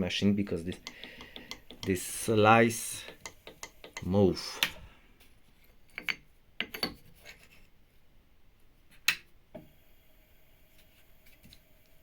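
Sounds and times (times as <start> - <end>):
metal scraping and clicking: 0.6 - 4.8.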